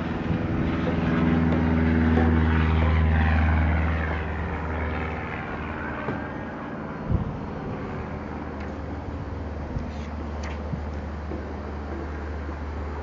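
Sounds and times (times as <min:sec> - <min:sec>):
low droning hum: 0:00.0 - 0:13.0
footsteps on steel steps: 0:00.4 - 0:03.6.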